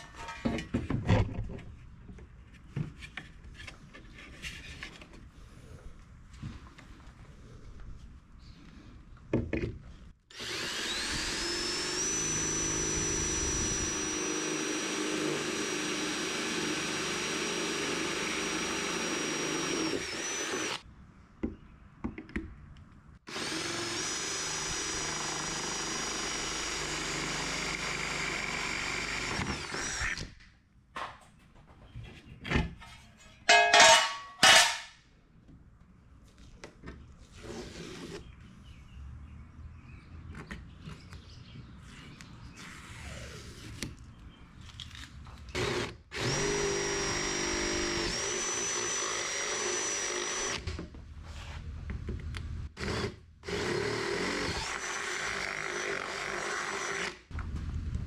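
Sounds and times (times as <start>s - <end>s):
power drill whine: 10.3s - 20.8s, 23.3s - 30.3s, 45.5s - 50.7s, 52.8s - 57.2s.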